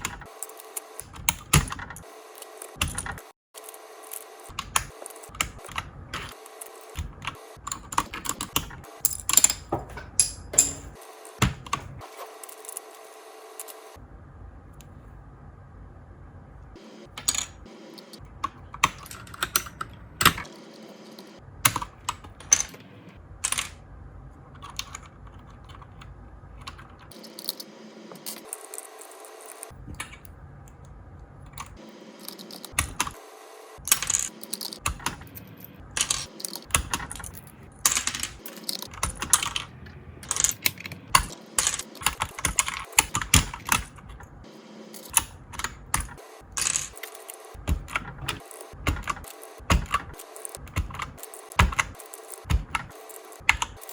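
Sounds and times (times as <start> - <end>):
keyboard keys clacking: 0.0 - 13.9, 17.0 - 23.6, 33.8 - 53.9.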